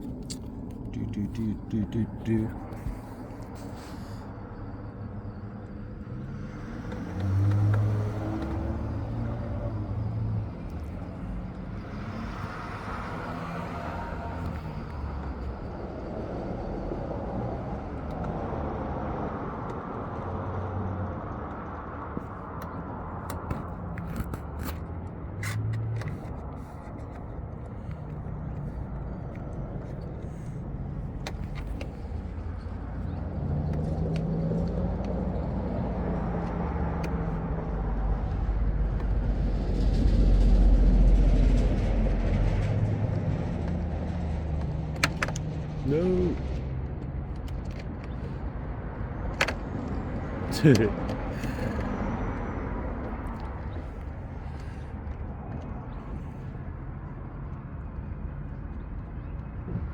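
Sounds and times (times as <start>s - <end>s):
motor vehicle noise: 0.0s - 59.9s.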